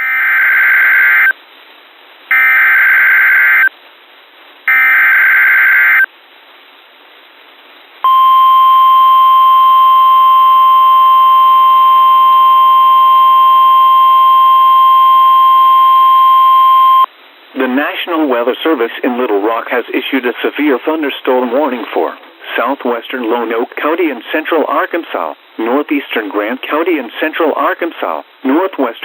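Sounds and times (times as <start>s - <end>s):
steady single-pitch alarm tone: 8.0s - 17.1s.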